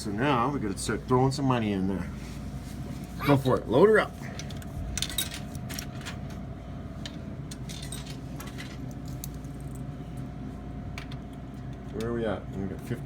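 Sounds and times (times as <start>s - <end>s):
vending machine humming: 0.0s - 13.0s
coins clinking into coin slot: 7.6s - 8.6s.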